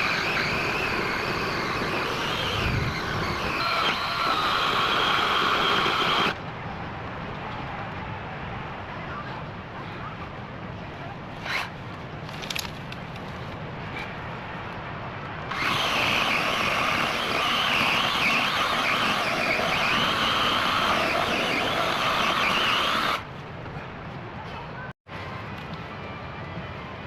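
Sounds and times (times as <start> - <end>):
electric chainsaw cutting: 0.0 - 6.4, 15.5 - 23.2.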